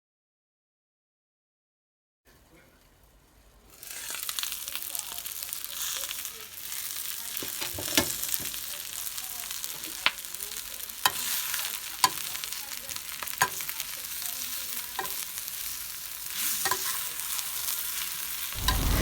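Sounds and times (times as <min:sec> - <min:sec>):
food sizzling in a skillet: 0:02.4 - 0:19.0.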